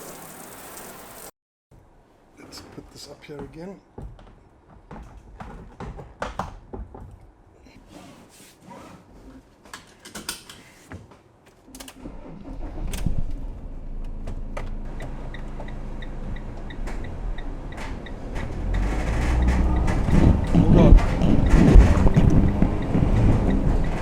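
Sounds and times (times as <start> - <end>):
van engine running: 12.1 - 24.0
light regular ticking: 14.9 - 24.0
handling clicks and knocks: 16.4 - 24.0.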